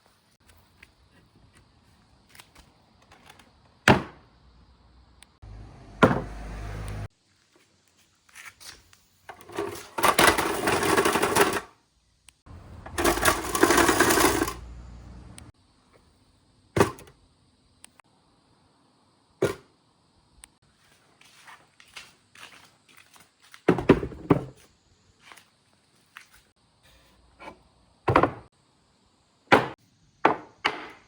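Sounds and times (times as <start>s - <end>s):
marbles rolling on track: 12.9s - 14.6s.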